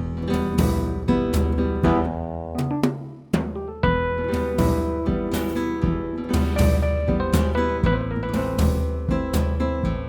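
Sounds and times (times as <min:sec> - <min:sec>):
drums: 0:00.0 - 0:10.0
guitar: 0:00.0 - 0:10.0
piano: 0:00.0 - 0:10.0.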